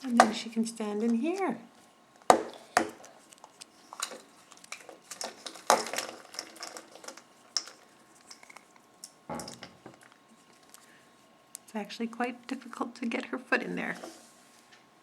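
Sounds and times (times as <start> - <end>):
faint rustling: 1.0 - 14.9.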